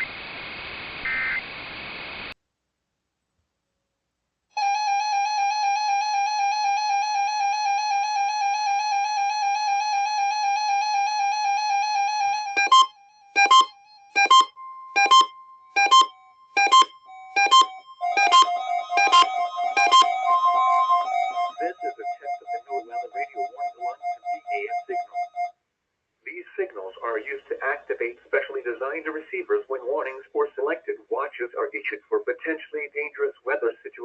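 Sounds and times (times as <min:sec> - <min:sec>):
electronic keyboard held note: 0:12.6 - 0:25.3
detached keyboard chords: 0:12.6 - 0:25.4.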